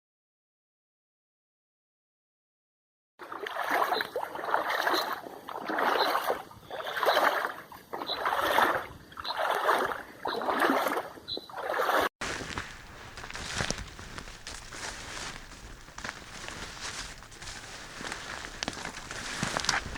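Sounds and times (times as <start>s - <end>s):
dense run of footsteps: 12.2s - 19.9s
footsteps on crunchy surface: 12.2s - 19.9s.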